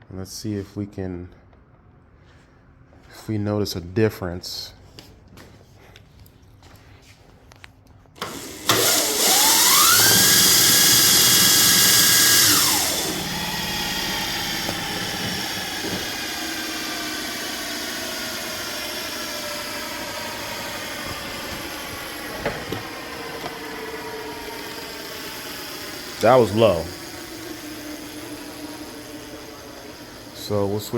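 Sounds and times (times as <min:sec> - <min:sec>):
electric motor whine: 0:08.2 - 0:30.9
wheel coasting down: 0:08.2 - 0:30.9.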